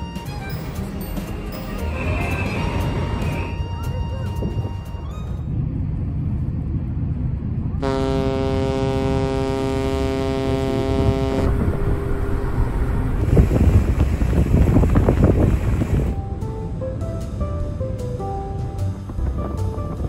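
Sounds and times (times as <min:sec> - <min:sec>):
ferry engines rumbling: 0:00.0 - 0:20.0
wind: 0:00.0 - 0:20.0
ship's horn blast: 0:07.8 - 0:16.2.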